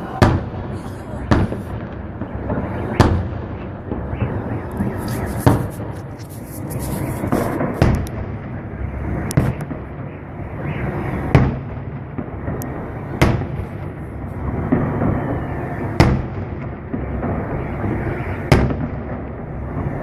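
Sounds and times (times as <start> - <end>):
continuous low rumble: 0.0 - 20.0
crackle of small reports: 0.8 - 8.2
firework shells bursting: 3.9 - 8.2.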